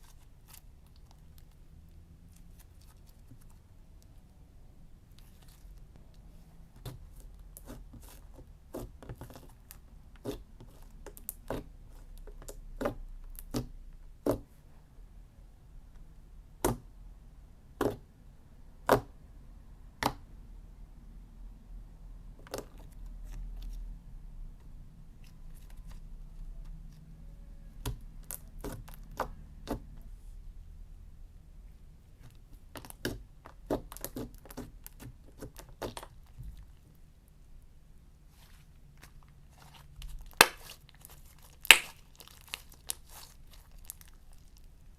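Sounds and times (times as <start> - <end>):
slime clicking and popping: 40.1 - 44.4.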